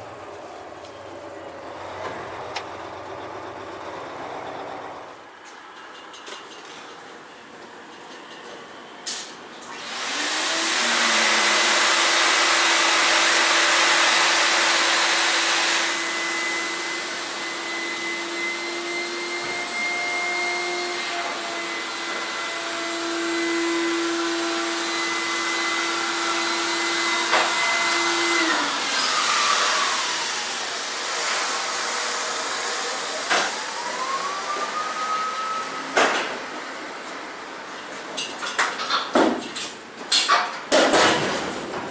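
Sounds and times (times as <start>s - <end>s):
machine motor hiss and whine: 9.7s - 37.2s
rising whine: 9.8s - 37.4s.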